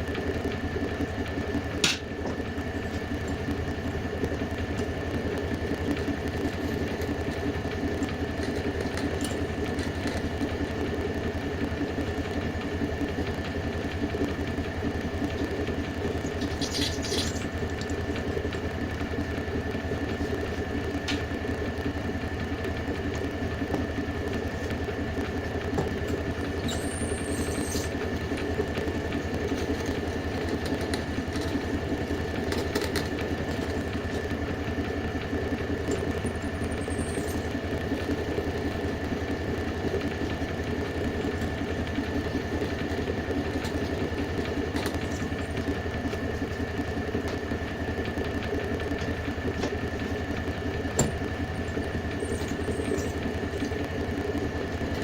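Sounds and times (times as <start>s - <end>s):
machine humming and whining: 0.0s - 55.0s
brief high squeaks: 26.6s - 27.9s.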